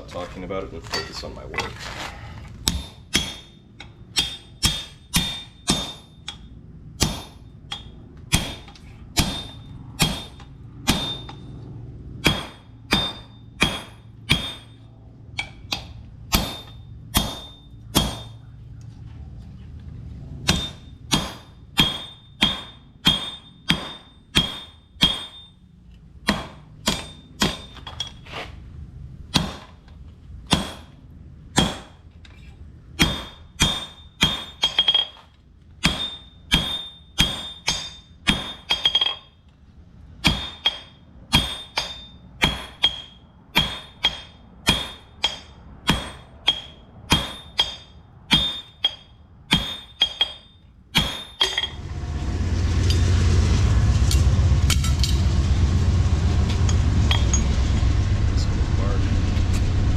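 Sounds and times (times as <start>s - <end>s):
low steady hum: 0.0s - 59.9s
hammer striking steel on anvil: 2.6s - 11.6s, 12.2s - 18.5s, 20.4s - 25.6s, 26.2s - 28.2s, 29.3s - 29.8s, 30.5s - 32.0s, 33.0s - 35.2s, 35.8s - 39.3s, 40.2s - 51.8s.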